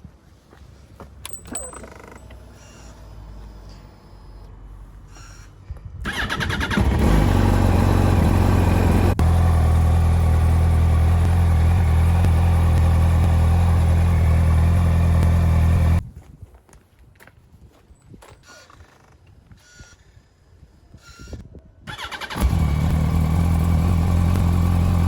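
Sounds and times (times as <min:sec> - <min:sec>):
engine starter cranking: 0:06.1 - 0:07.6, 0:21.9 - 0:23.8
motorcycle engine idling: 0:07.0 - 0:16.0, 0:22.0 - 0:25.0.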